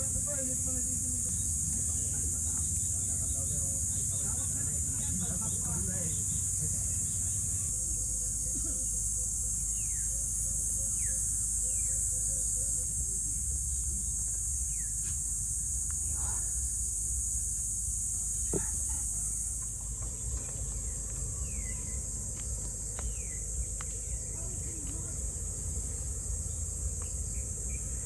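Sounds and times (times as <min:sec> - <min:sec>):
crickets droning: 0:00.0 - 0:28.0
low steady rumble: 0:00.0 - 0:28.0
bird-like chirps: 0:05.0 - 0:13.6.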